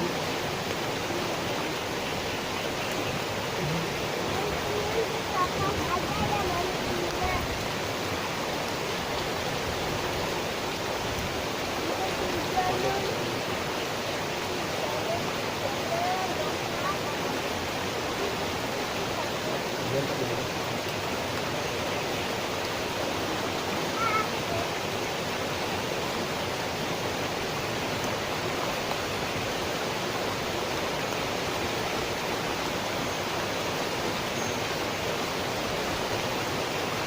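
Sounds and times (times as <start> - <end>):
steady hiss of water: 0.0 - 37.0
faint chirp: 34.2 - 34.8.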